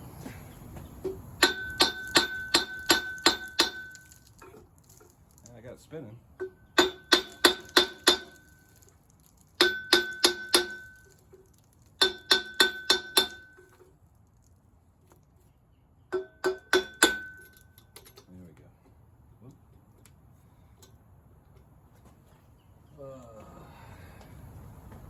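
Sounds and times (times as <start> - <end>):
hammer ringing on steel: 1.4 - 4.0.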